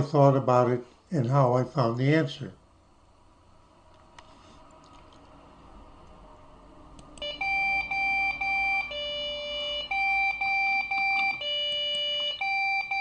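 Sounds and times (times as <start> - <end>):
computer beeper beeping: 7.2 - 13.0.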